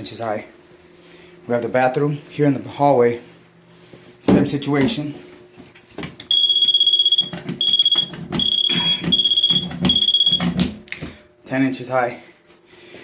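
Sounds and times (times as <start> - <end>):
moisture meter high-pitched beeps: 6.3 - 10.6.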